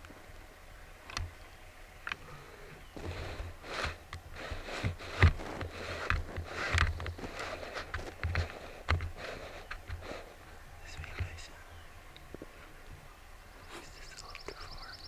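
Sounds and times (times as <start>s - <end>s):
crunching in dry leaves: 3.0s - 11.6s.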